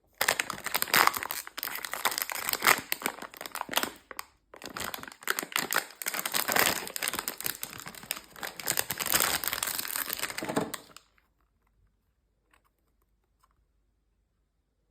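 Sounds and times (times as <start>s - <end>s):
packaging crinkling: 0.1s - 11.2s.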